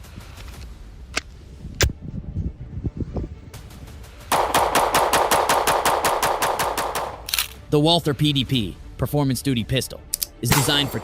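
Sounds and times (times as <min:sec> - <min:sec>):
rapid gunfire: 0:03.7 - 0:07.3.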